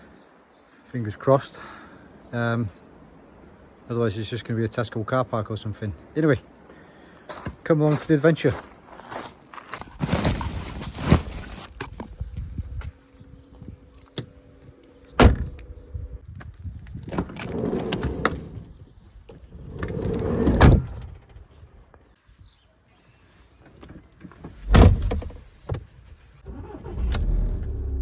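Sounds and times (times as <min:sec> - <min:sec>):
van doors slamming: 0:15.2 - 0:15.5, 0:20.4 - 0:21.1, 0:24.6 - 0:25.4
sliding door rolling shut: 0:17.2 - 0:18.6, 0:19.7 - 0:20.9
engine starting and running: 0:26.4 - 0:28.0.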